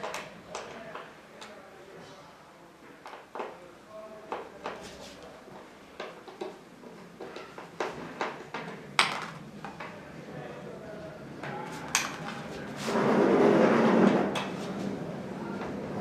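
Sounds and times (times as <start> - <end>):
wooden parts knocking: 7.2 - 9.9
sliding scrape: 11.7 - 15.0.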